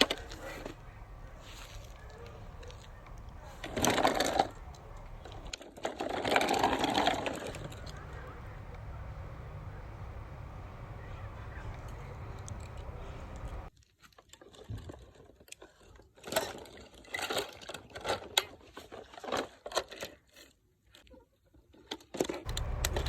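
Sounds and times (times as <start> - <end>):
steady low hum: 0.0 - 5.5, 7.5 - 13.7, 22.5 - 23.0
plastic toys clicking and rattling: 0.0 - 8.9, 11.7 - 23.0.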